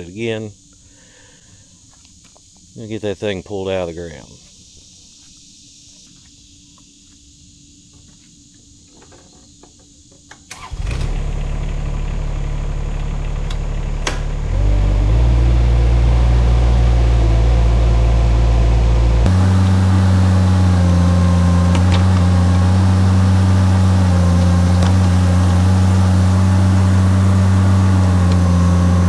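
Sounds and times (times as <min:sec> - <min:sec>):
excavator engine running: 0:10.5 - 0:29.0.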